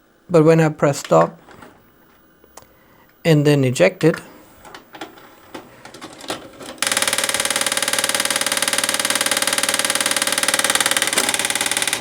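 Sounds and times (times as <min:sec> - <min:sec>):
tape deck mechanism buzzing: 0:04.6 - 0:12.0.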